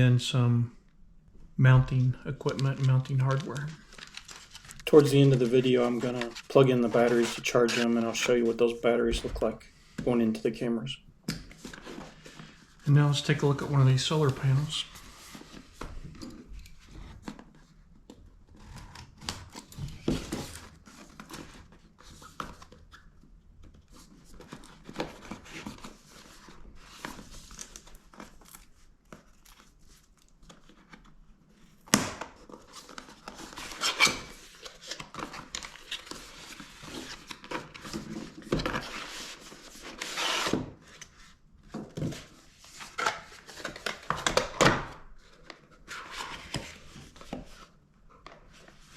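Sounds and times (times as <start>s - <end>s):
packaging crinkling and rustling: 2.3s - 9.5s, 23.9s - 41.1s, 41.8s - 48.9s.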